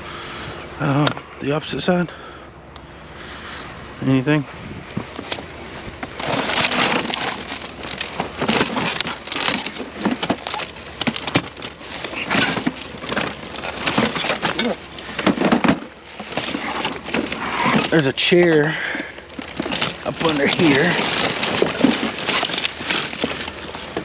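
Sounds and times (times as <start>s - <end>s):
debris crunching and clattering: 6.0s - 24.0s.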